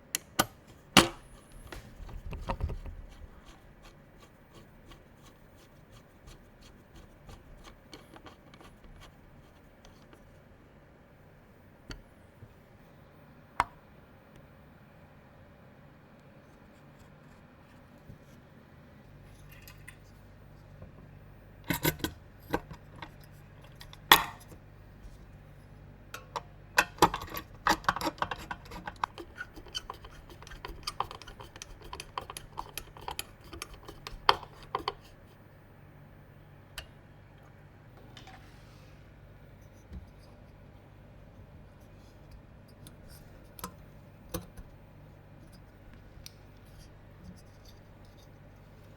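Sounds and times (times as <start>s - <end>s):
low steady hum: 0.0s - 48.9s.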